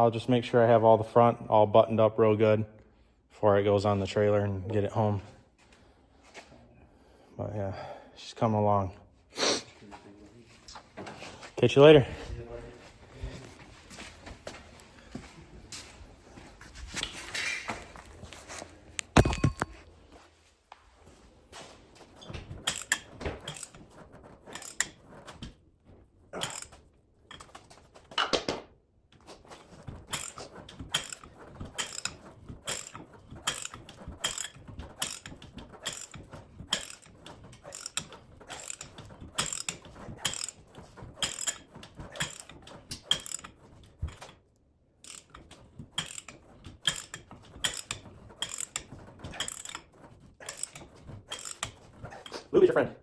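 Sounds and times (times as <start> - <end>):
ratchet pawl clicking: 22.6 - 23.8, 24.5 - 25.0, 26.4 - 26.8, 30.1 - 44.3, 45.0 - 52.3.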